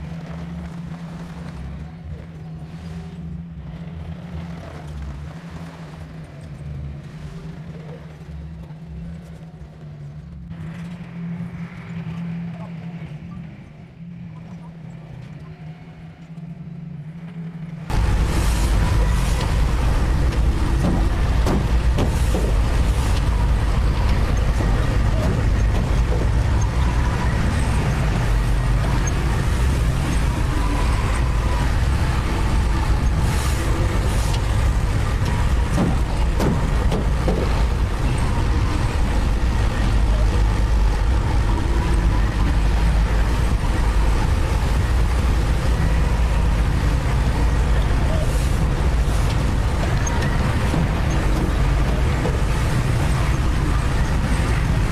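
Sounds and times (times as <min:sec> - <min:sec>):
heavy diesel machinery running: 0:00.0 - 0:54.9.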